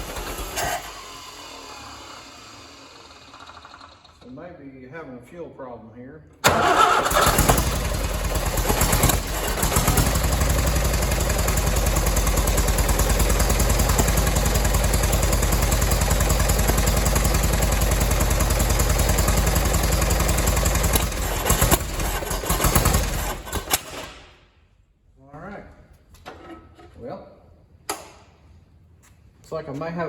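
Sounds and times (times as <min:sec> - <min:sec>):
tractor engine running: 0:06.4 - 0:23.9.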